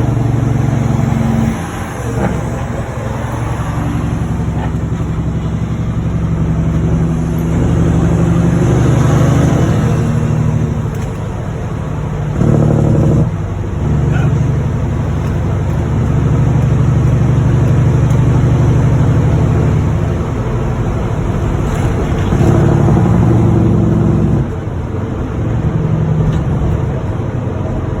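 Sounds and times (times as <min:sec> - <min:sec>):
truck diesel engine running: 0:00.0 - 0:28.0.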